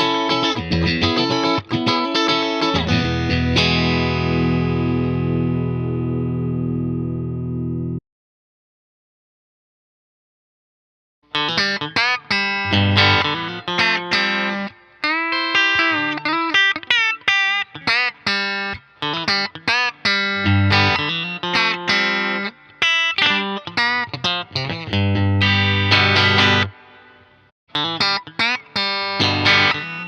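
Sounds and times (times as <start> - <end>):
electric guitar playing: 0.0 - 8.0, 11.3 - 30.0.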